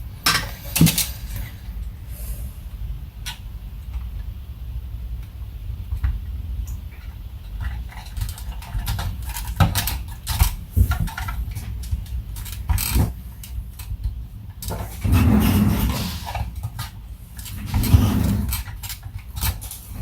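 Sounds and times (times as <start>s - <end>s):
scrape: 14.7s - 16.5s, 17.5s - 18.7s.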